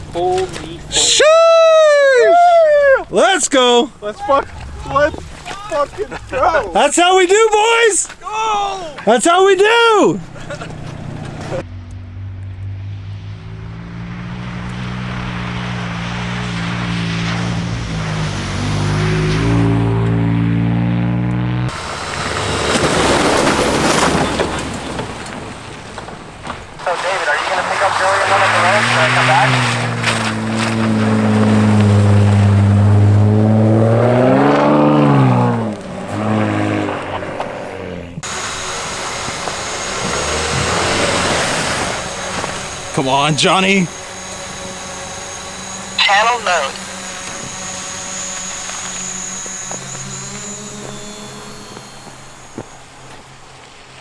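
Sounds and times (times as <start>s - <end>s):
rushing noise of driving through snow: 0.0s - 54.0s
truck engine under load: 0.0s - 54.0s
rushing noise: 38.2s - 52.0s
faint high whine: 38.2s - 54.0s.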